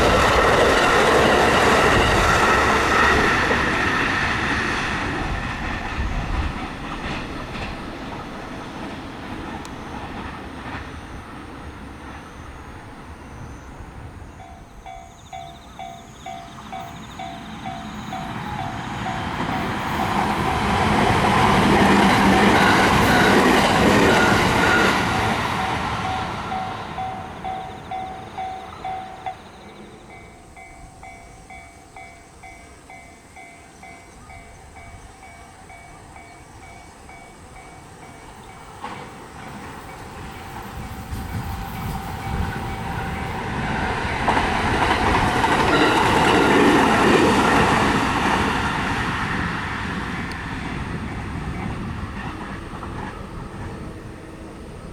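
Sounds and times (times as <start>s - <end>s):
train wheels clacking over rail joints: 0.0s - 11.5s, 14.4s - 29.8s, 38.0s - 54.0s
level-crossing warning bell dinging: 0.0s - 54.9s
train passing: 0.0s - 54.9s
train rumble: 0.0s - 54.9s.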